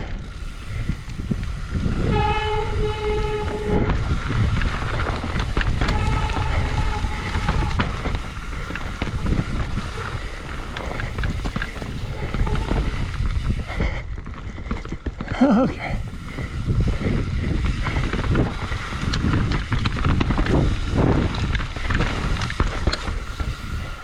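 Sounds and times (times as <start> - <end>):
bike rattling over rough trail: 0.0 - 24.0
bike disc brakes squealing: 0.2 - 13.7.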